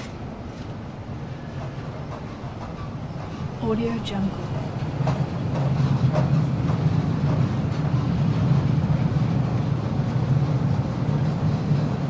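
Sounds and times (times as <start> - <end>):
faint train wheel clacks: 0.0 - 12.0
freight train rumbling past: 0.0 - 12.0.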